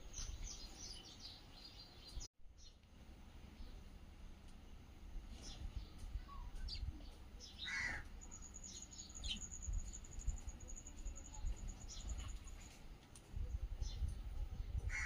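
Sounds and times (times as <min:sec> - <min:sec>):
birds chirping: 0:00.0 - 0:02.8, 0:04.6 - 0:12.8.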